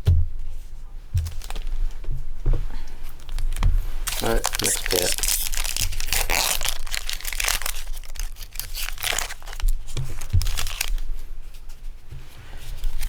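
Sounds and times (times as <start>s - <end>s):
foil wrapper tearing and crinkling: 3.2s - 11.0s.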